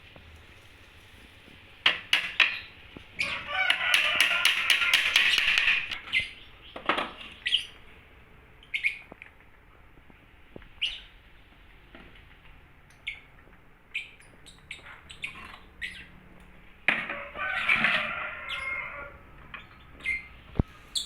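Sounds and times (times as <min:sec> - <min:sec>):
birds chirping: 0:02.4 - 0:07.9, 0:08.6 - 0:09.1, 0:12.9 - 0:16.3, 0:17.2 - 0:21.0
rooster crowing: 0:03.2 - 0:05.8, 0:17.0 - 0:19.4.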